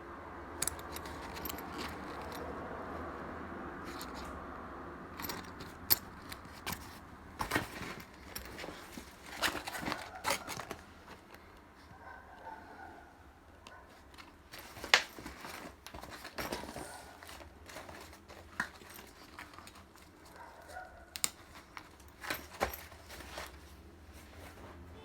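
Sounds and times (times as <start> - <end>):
rustling and crinkling packaging: 5.2 - 11.9, 13.8 - 24.9.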